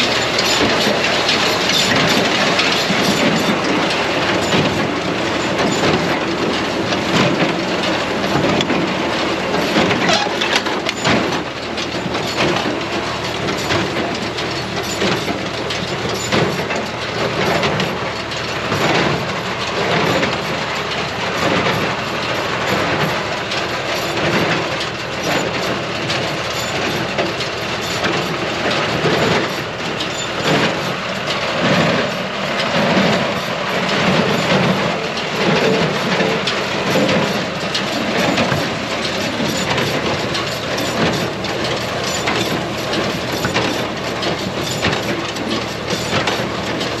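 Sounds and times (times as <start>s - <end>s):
baler mechanical clatter: 0.0s - 47.0s
tractor engine: 0.0s - 47.0s.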